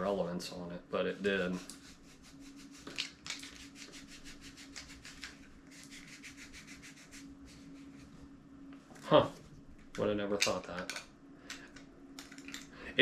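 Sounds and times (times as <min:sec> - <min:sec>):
rubbing on plastic: 0:01.2 - 0:08.3.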